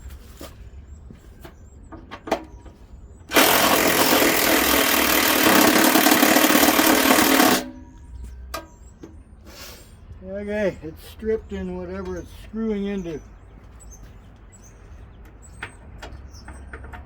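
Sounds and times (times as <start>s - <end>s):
impact driver hammering: 3.3s - 7.9s.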